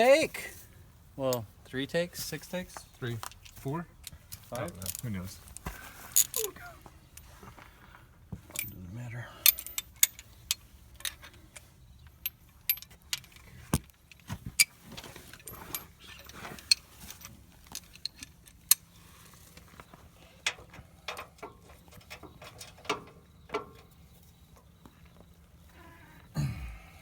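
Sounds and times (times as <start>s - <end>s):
metal hand tools clinking: 3.0s - 5.6s, 6.2s - 7.3s, 9.4s - 13.5s.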